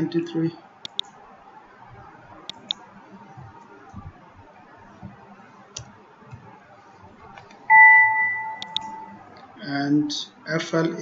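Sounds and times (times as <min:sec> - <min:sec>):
faint background noise: 0:00.0 - 0:11.0
computer mouse clicks: 0:00.8 - 0:01.2, 0:02.5 - 0:02.8, 0:08.6 - 0:08.9
loud two-pitch electronic beep: 0:07.7 - 0:09.2.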